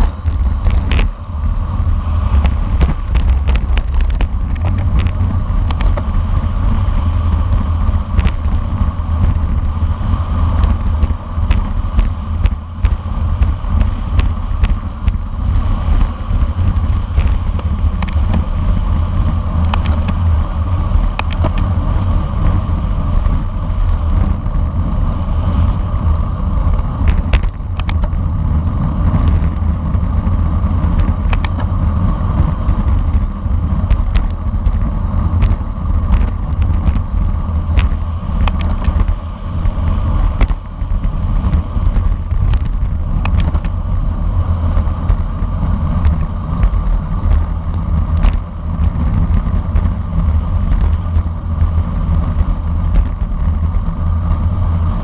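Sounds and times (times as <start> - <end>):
sharp clicks and knocks: 0.0 - 1.2, 2.3 - 6.2, 7.5 - 9.8, 10.6 - 18.5, 19.6 - 20.3, 21.0 - 21.7, 26.7 - 28.3, 29.1 - 30.1, 30.8 - 31.8, 32.4 - 43.9, 45.9 - 54.4
wind buffeting microphone: 0.0 - 55.0.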